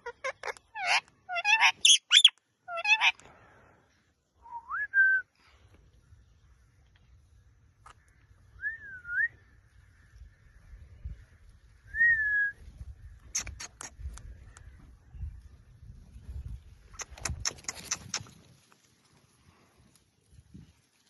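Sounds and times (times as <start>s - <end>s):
parrot high chirps: 0.0s - 3.2s.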